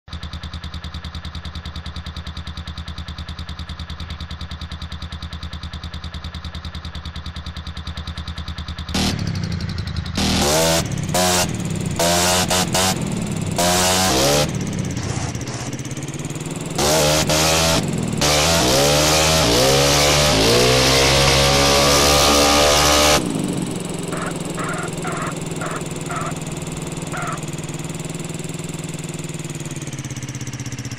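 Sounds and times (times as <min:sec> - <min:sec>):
scooter engine idling and revving: 0:00.0 - 0:30.9.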